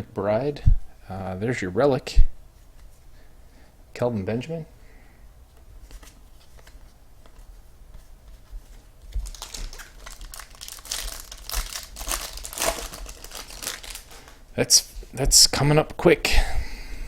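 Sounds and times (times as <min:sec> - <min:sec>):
foil wrapper tearing and crinkling: 0:09.1 - 0:14.4.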